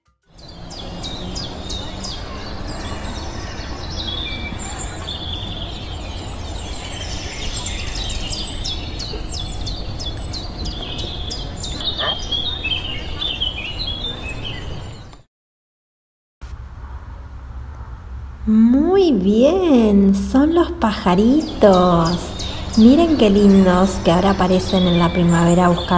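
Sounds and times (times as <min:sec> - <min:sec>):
small birds chirping: 0:00.3 - 0:15.2, 0:18.5 - 0:25.9
low background hum: 0:16.4 - 0:25.9.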